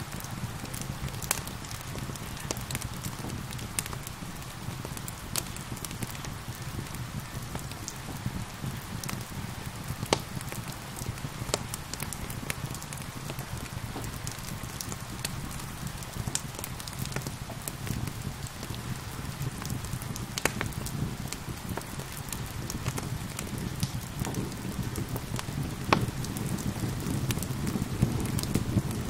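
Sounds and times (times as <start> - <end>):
gentle rain hiss: 0.0 - 29.0
wood fire crackling and popping: 0.0 - 29.0.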